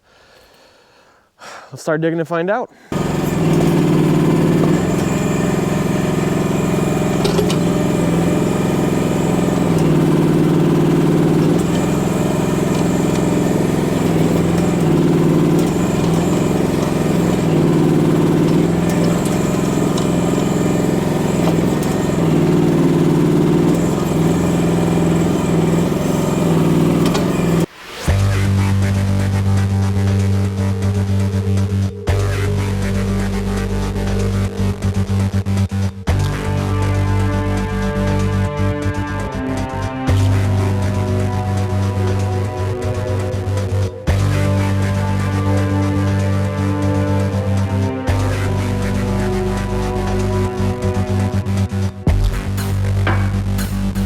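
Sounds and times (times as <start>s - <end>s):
excavator engine digging: 2.9s - 27.7s.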